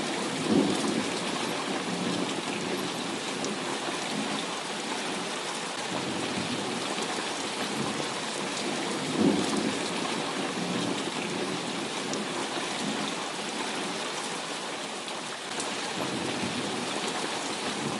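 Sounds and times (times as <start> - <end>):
heavy rain: 0.0 - 17.9
thunder: 0.3 - 2.9, 8.8 - 11.6.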